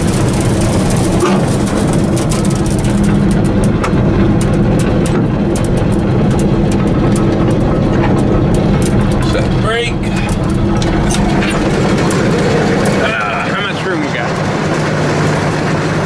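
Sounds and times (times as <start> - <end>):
diesel engine running under load: 0.0 - 16.0
light ticks and rattles: 0.0 - 16.0.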